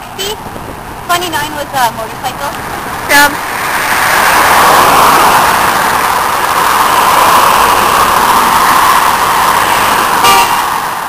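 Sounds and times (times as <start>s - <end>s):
road traffic driving past: 0.0s - 11.0s.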